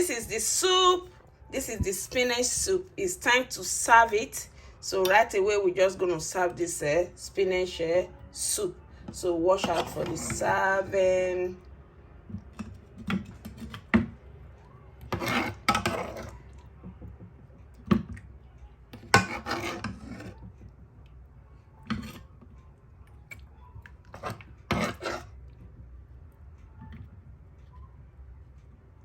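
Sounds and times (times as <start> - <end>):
spoon scraping pot: 9.1 - 11.2, 12.3 - 14.2, 15.0 - 17.1, 19.0 - 20.7, 21.8 - 22.5, 24.0 - 25.5.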